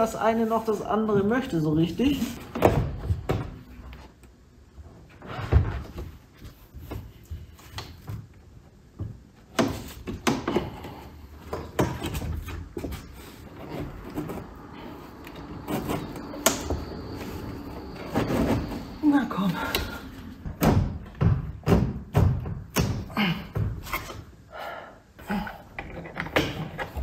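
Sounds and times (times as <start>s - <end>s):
plastic trim knocking and clunking: 20.5s - 23.8s.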